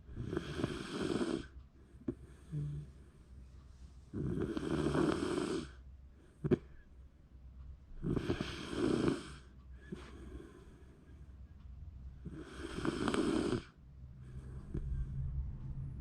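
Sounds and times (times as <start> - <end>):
dog snoring: 0.0 - 3.1, 4.1 - 5.8, 8.0 - 10.8, 12.2 - 15.1.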